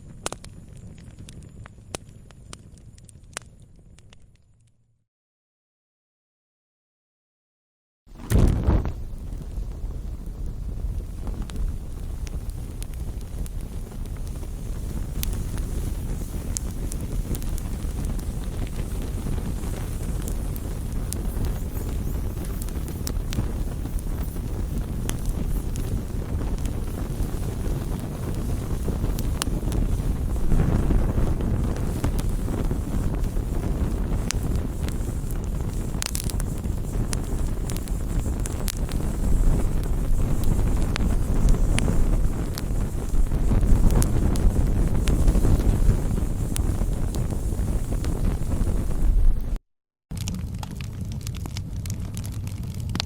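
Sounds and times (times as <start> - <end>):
fire crackling and popping: 0.0 - 4.7, 8.1 - 53.0.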